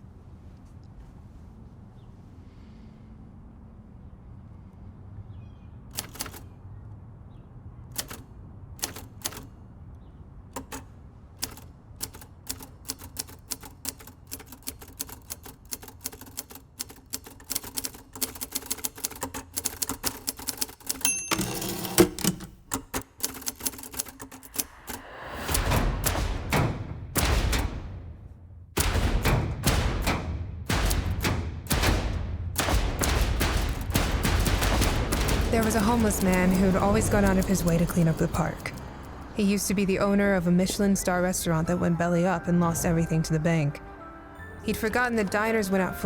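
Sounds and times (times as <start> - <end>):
manual typewriter typing: 5.9 - 6.6, 7.9 - 9.6, 10.5 - 27.6, 32.6 - 39.6
typewriter carriage return rasp: 5.9 - 6.6, 7.9 - 9.5, 10.6 - 25.0, 33.0 - 39.2
typewriter bell ring: 19.7 - 22.6.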